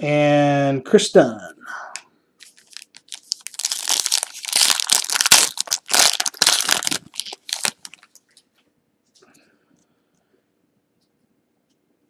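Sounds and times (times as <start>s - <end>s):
wrapper tearing and crinkling: 2.4s - 8.2s.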